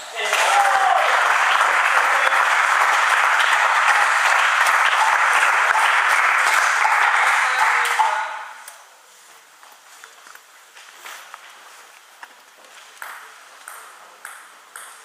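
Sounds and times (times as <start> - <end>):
spectators clapping: 0.2 - 8.5.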